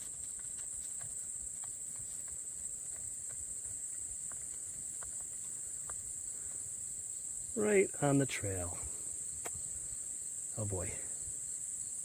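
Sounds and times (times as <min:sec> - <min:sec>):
faint ticks: 0:00.0 - 0:06.6
insects chirring: 0:00.0 - 0:12.0.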